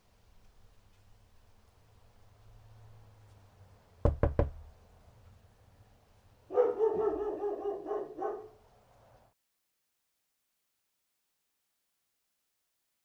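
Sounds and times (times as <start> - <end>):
sharp knocks: 4.0 - 4.7
dog barking: 6.5 - 8.6.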